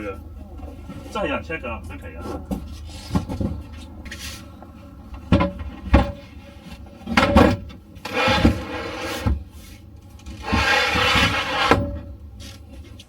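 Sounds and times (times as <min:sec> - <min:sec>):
cushions scraping and rubbing: 0:00.0 - 0:13.0
boards knocking: 0:01.8 - 0:09.5.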